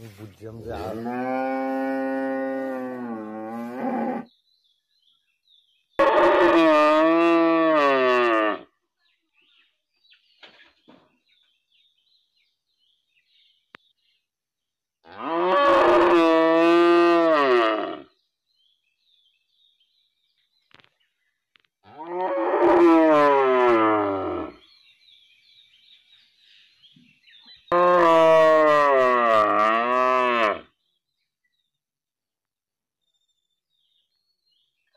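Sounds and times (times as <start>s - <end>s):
cow mooing: 0.8s - 4.3s, 6.0s - 8.6s, 15.1s - 18.1s, 21.9s - 24.6s, 27.7s - 30.7s.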